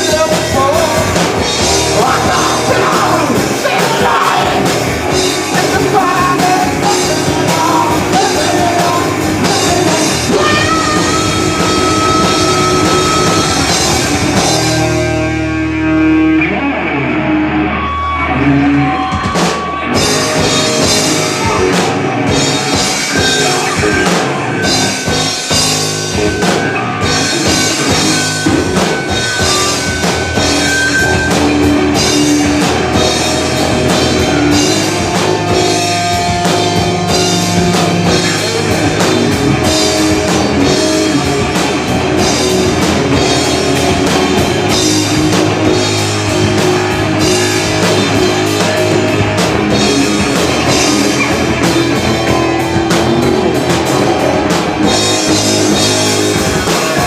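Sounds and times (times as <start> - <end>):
drum kit beating: 0.0 - 16.1, 18.8 - 57.0
electric guitar: 0.0 - 57.0
rock band playing live: 0.0 - 57.0.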